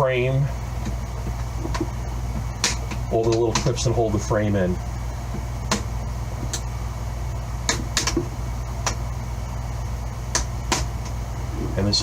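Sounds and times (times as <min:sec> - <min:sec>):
low hum: 0:00.0 - 0:12.0
plastic clips snapping: 0:07.7 - 0:08.2.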